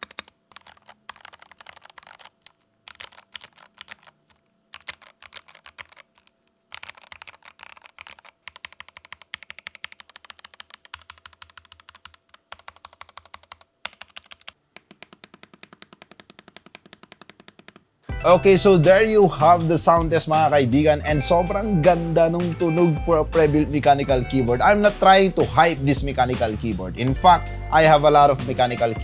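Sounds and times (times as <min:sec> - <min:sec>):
mechanical keyboard typing: 0:00.0 - 0:17.8.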